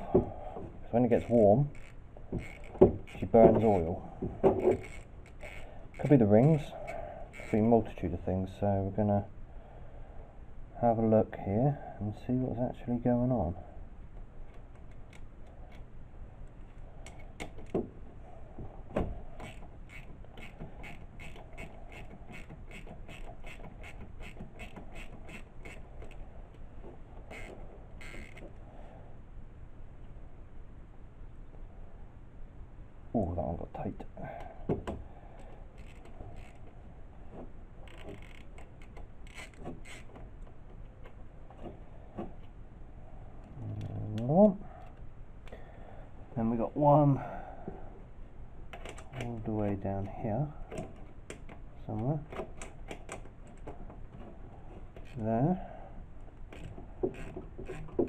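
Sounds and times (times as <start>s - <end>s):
faint steady hum: 0.0s - 58.0s
hand ratchet clicking: 1.2s - 7.7s, 19.4s - 26.2s, 27.3s - 28.5s, 35.8s - 36.7s, 37.8s - 40.2s, 56.5s - 58.0s.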